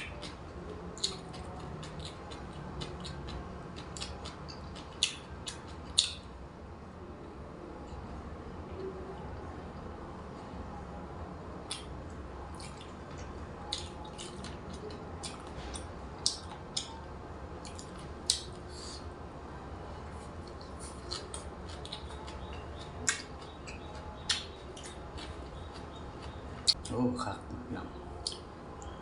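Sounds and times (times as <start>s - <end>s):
wet chewing and mouth smacks: 0.0s - 6.3s, 11.6s - 17.0s, 17.6s - 19.0s, 20.2s - 26.9s, 28.2s - 29.0s
low steady hum: 0.0s - 29.0s.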